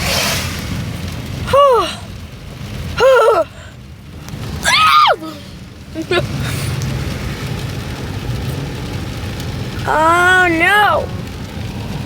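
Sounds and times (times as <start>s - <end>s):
car road noise rumble: 0.0s - 12.0s
person exclaiming in dismay: 1.5s - 2.1s, 3.0s - 3.6s, 4.6s - 5.4s, 9.9s - 11.2s.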